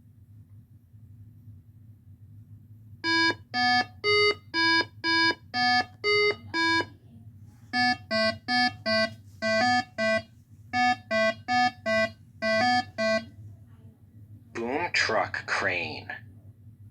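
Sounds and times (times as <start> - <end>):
short electronic beeps: 7.8 - 10.2, 10.8 - 13.3.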